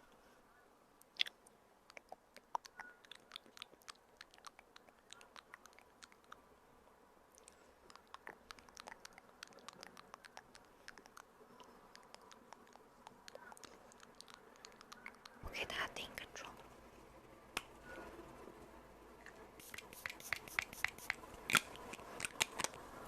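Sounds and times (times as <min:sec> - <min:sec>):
wet mouth clicks and smacks: 0:01.0 - 0:06.4, 0:07.4 - 0:15.4, 0:19.6 - 0:22.8.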